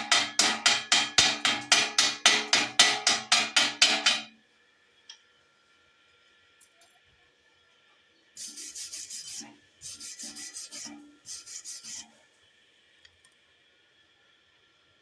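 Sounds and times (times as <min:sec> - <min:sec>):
hand tool scraping metal: 0:08.4 - 0:12.1.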